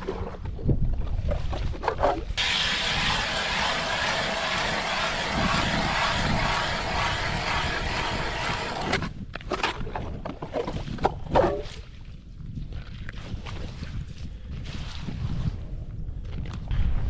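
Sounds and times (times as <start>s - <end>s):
knocks and scrapes clearing ice: 1.2s - 11.8s
ice auger grinding: 2.4s - 9.1s.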